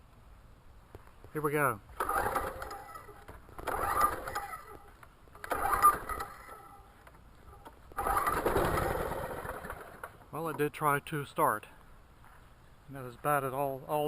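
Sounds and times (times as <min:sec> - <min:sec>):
mower engine turning over: 0:01.9 - 0:10.3
recoil starter rope pulled: 0:01.9 - 0:10.3.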